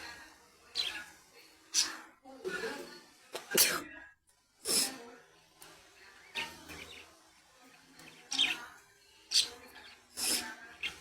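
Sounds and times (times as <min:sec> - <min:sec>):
budgerigars chirping: 0:09.3 - 0:09.6.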